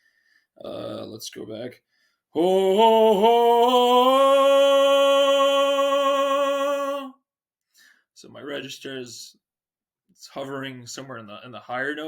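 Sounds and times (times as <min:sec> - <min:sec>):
man singing a sustained vowel: 0:02.4 - 0:07.2.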